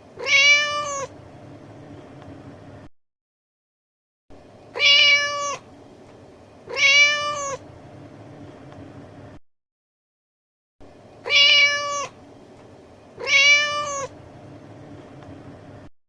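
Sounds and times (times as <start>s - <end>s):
cat meowing: 0.2s - 1.1s, 4.7s - 5.7s, 6.7s - 7.6s, 11.2s - 12.2s, 13.2s - 14.1s.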